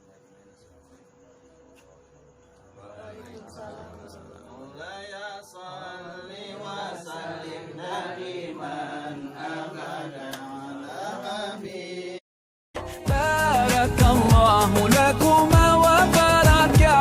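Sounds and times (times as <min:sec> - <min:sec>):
voices chanting a prayer: 0:02.6 - 0:12.2
loud music with singing: 0:12.8 - 0:17.0.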